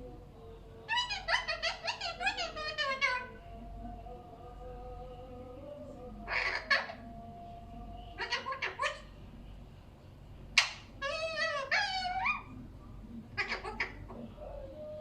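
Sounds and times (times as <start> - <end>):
parakeet chattering calls: 0.9 - 3.4, 6.3 - 7.0, 8.2 - 9.1, 10.6 - 12.5, 13.3 - 14.6
parakeet warbling: 0.9 - 3.4, 6.2 - 7.0, 8.1 - 9.2, 10.6 - 12.5, 13.3 - 14.9.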